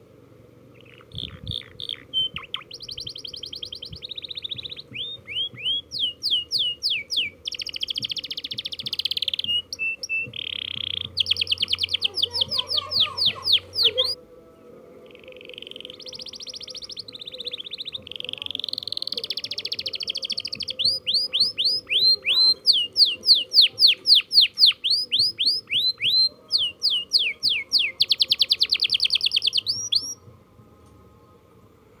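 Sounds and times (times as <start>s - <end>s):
canary singing trills: 0.7s - 14.2s, 15.0s - 30.3s.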